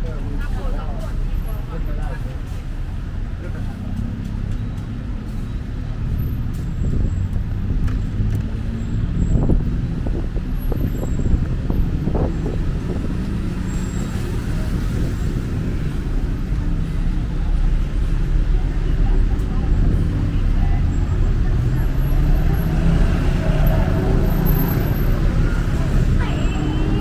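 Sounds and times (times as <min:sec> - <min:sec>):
traffic rumble: 0:00.0 - 0:27.0.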